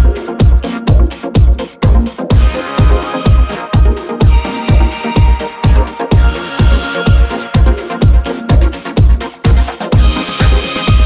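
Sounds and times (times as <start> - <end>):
kick drum beat: 0.0 - 11.0
sustained synth chords: 0.0 - 11.0.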